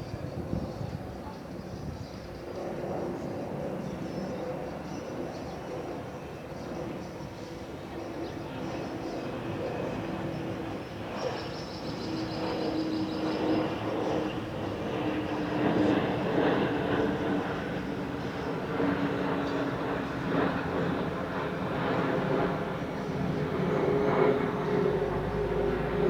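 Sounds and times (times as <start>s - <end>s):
jet engines roaring: 11.8s - 26.0s.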